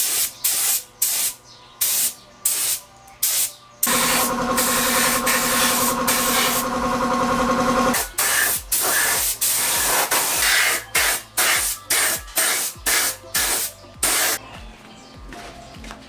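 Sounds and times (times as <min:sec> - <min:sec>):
spray gun hissing bursts: 0:03.3 - 0:14.4.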